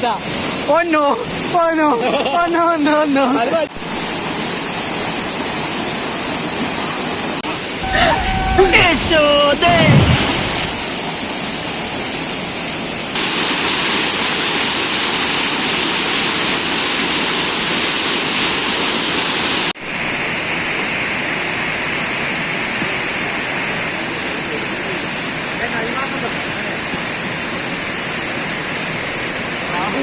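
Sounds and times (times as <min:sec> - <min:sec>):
waterfall roaring: 0:07.8 - 0:11.0.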